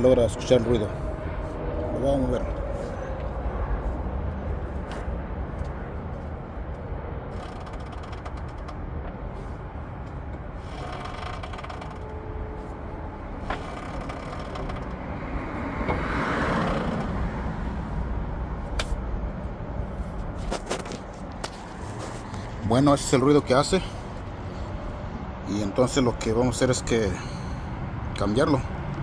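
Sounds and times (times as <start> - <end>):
steady low rumble: 0.0 - 29.0.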